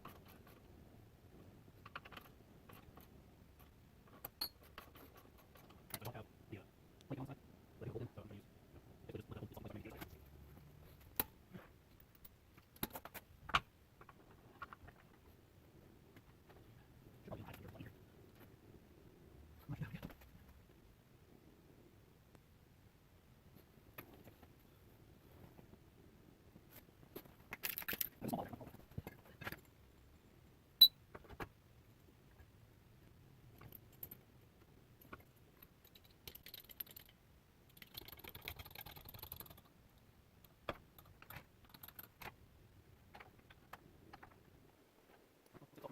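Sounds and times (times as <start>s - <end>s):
tools clicking and knocking: 1.8s - 6.1s
small clicks and light knocks: 1.8s - 6.2s, 33.5s - 42.4s.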